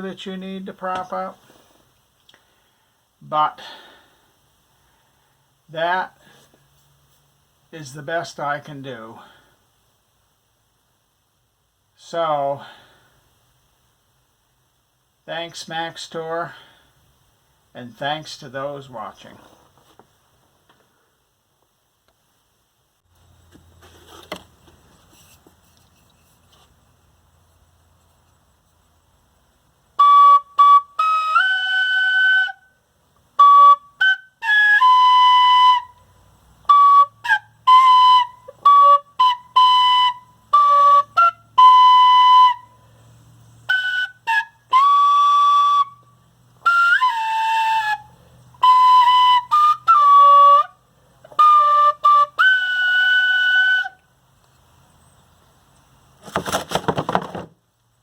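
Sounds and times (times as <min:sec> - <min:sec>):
whistle-like melody: 0:30.0 - 0:32.8, 0:33.4 - 0:36.1, 0:36.7 - 0:42.8, 0:43.7 - 0:54.0.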